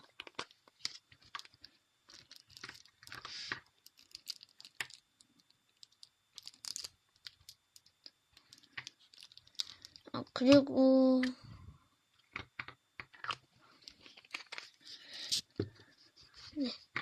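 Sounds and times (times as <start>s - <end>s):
plastic containers clicking and tapping: 12.2s - 14.6s.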